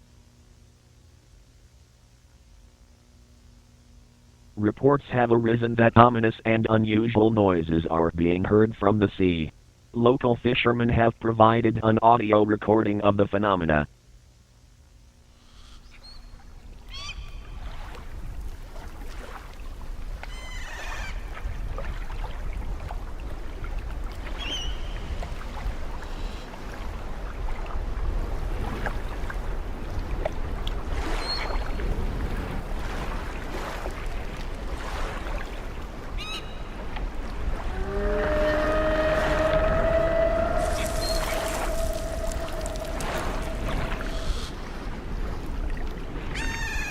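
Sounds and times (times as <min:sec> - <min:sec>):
low rumble and wash of sea: 0:00.0 - 0:46.9
wavering cries sliding in pitch: 0:37.6 - 0:44.9.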